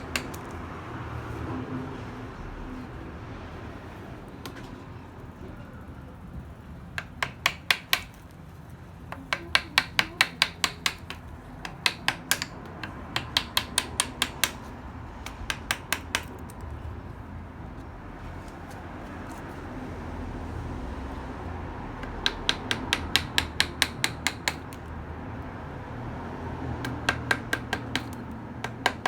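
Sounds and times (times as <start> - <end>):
mallet striking chisel into wood: 0.0 - 0.5, 7.0 - 8.2, 9.1 - 16.4, 22.0 - 24.8, 26.8 - 29.0.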